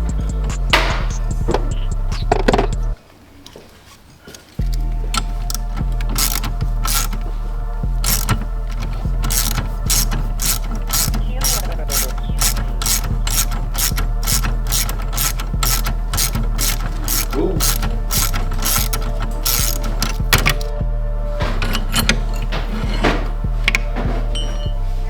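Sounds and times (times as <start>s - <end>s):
ratchet wrench clicking: 4.6s - 20.8s.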